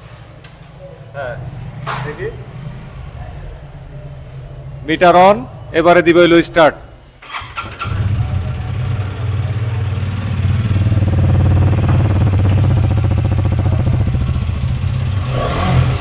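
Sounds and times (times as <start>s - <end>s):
motorcycle engine idling: 7.2s - 16.0s.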